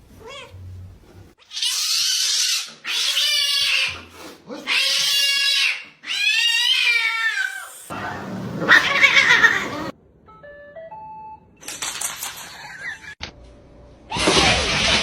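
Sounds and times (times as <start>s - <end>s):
cat yowling: 1.4s - 7.9s, 8.6s - 9.9s.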